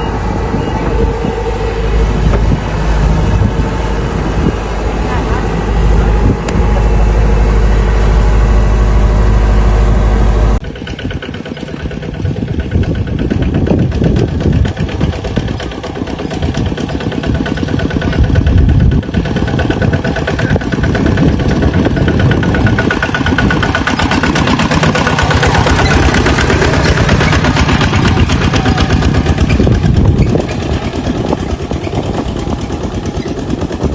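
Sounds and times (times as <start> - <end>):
harvester engine running: 0.0 - 33.9
loud steady low drone: 0.0 - 33.9.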